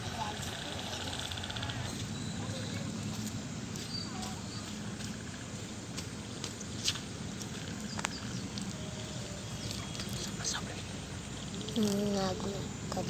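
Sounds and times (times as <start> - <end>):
sharp drip ticks: 3.0 - 13.0
rain hiss: 5.5 - 13.0.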